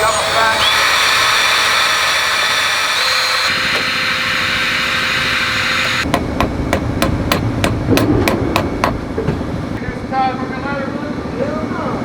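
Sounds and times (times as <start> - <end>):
power drill boring metal: 0.0 - 6.2
hammer tapping metal: 5.8 - 9.4.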